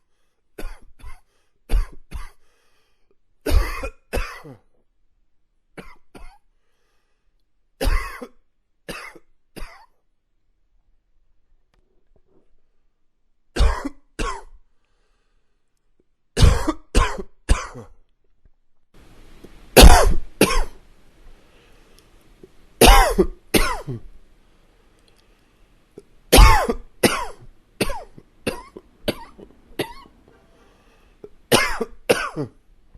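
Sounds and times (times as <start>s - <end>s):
man coughing: 3.5s - 4.7s, 13.6s - 14.6s, 16.4s - 18.0s, 19.8s - 20.8s, 22.8s - 24.1s, 26.3s - 30.1s, 31.5s - 32.6s.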